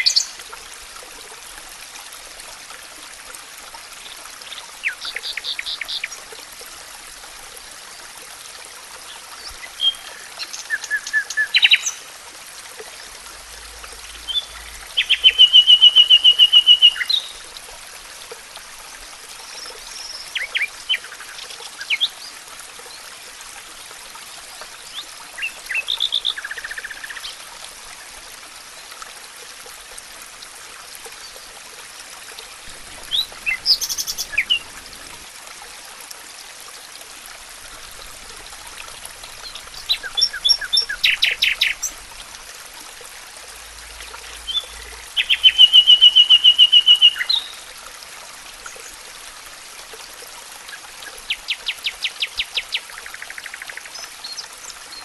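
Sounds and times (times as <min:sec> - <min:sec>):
stream rushing: 0:00.0 - 0:51.6
songbirds chirping and trilling: 0:33.1 - 0:34.7.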